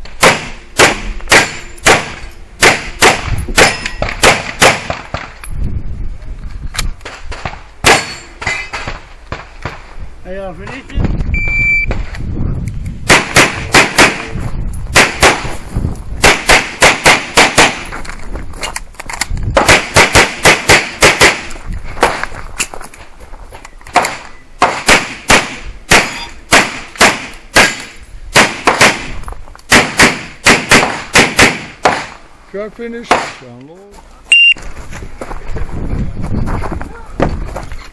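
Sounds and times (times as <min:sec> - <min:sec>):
handgun shots: 0:00.2 - 0:05.3, 0:07.0 - 0:09.8, 0:13.1 - 0:14.3, 0:23.9 - 0:32.2
shot timer beep: 0:11.3 - 0:11.9, 0:34.3 - 0:34.6.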